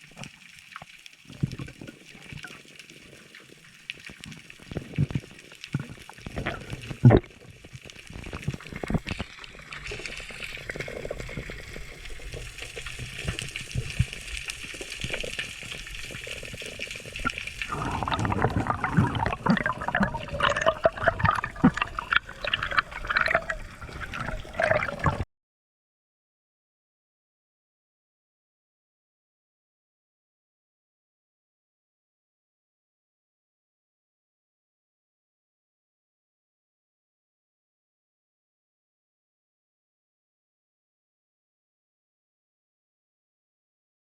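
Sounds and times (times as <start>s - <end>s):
water sloshing and bubbling: 0.0s - 25.3s.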